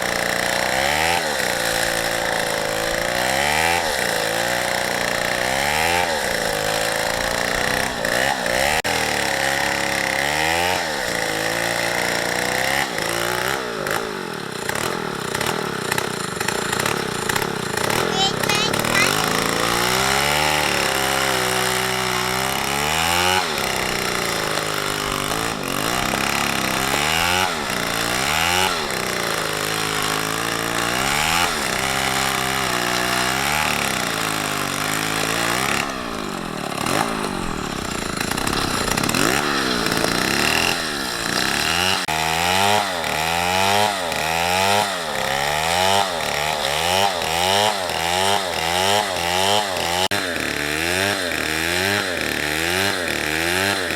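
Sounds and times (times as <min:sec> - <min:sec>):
chainsaw revving while cutting: 0:00.0 - 0:53.9.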